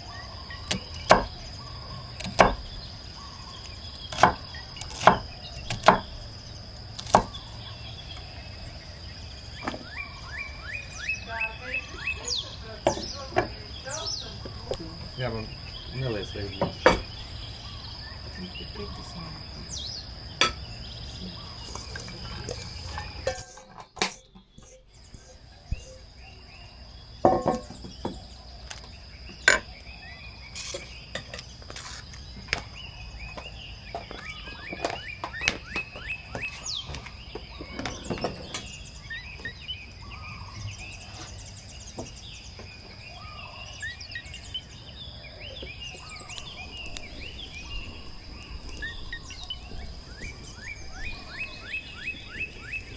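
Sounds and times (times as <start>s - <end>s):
bird chirps: 0.0s - 26.9s, 32.2s - 52.9s
insect drone: 0.0s - 52.9s
cookware and utensils clinking: 21.6s - 24.8s.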